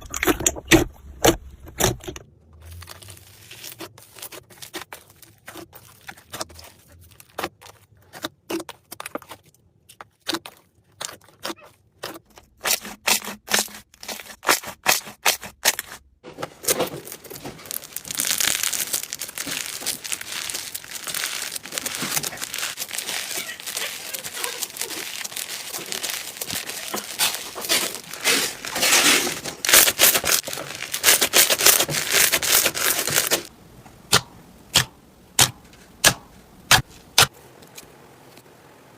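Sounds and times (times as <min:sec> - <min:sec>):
slime crackling and popping: 0:16.7 - 0:33.5.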